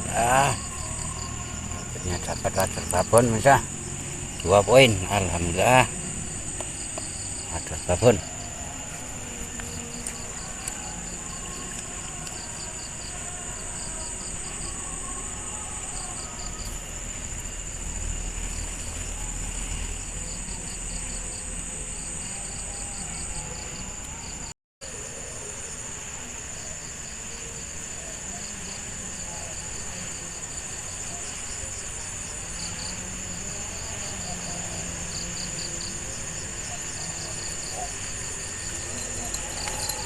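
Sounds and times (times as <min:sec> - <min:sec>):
insects buzzing: 0:00.0 - 0:40.0
insects chirping: 0:00.0 - 0:40.0.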